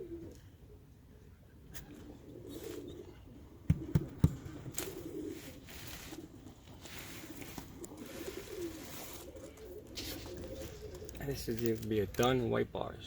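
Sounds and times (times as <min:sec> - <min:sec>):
pigeons cooing: 0:00.0 - 0:11.4
sharp knocks: 0:03.7 - 0:04.8.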